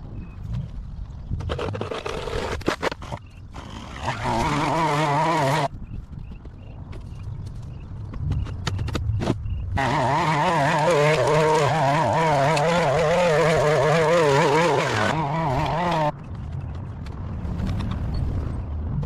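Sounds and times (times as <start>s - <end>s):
small petrol engine running: 3.5s - 5.7s, 9.8s - 16.1s.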